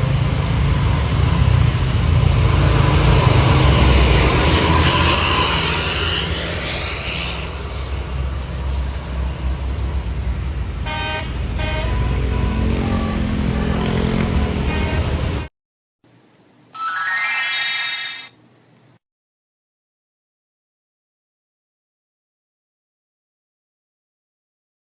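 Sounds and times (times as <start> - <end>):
bus engine rumbling: 0.0 - 15.5
multi-tone bus horn toots: 10.8 - 15.5.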